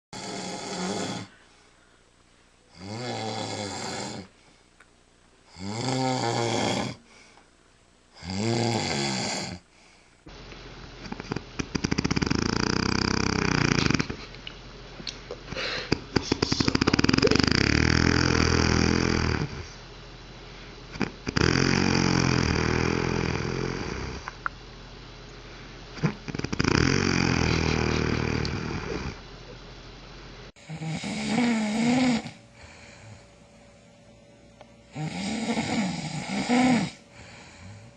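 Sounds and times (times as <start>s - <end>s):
person snoring: 0.2s - 1.4s, 2.7s - 4.3s, 5.5s - 7.1s, 8.2s - 9.6s, 11.1s - 14.2s, 15.5s - 19.8s, 20.9s - 24.3s, 26.0s - 29.2s, 30.6s - 33.3s, 34.9s - 37.9s.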